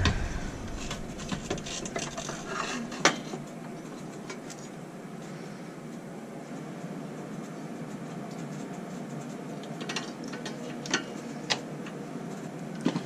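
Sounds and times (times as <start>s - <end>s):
sharp knock: 0.0s - 1.7s
low steady background noise: 0.0s - 13.0s.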